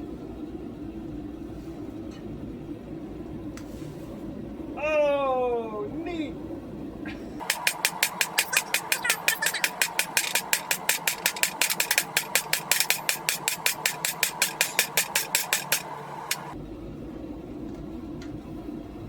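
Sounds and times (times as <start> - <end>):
steady hum: 0.0 - 19.0
hammer striking steel on anvil: 7.4 - 16.6.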